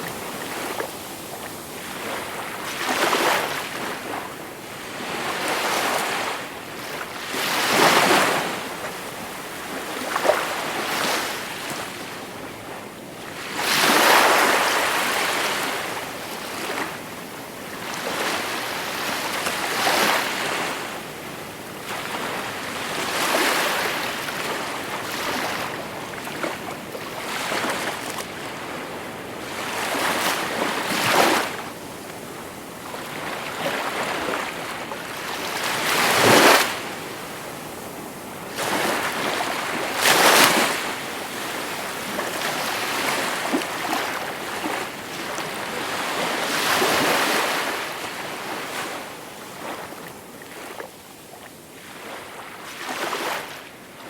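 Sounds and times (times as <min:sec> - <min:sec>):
sea waves breaking: 0:33.0 - 0:47.8.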